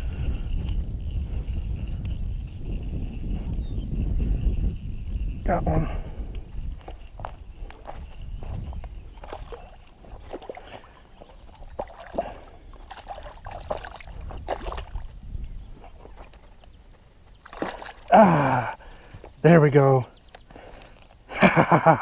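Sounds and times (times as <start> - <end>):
water sloshing and splashing: 9.1 - 15.2, 17.3 - 18.2.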